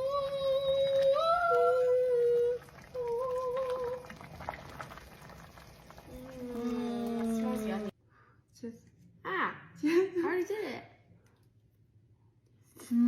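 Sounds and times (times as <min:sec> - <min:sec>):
woman humming: 0:06.1 - 0:07.9.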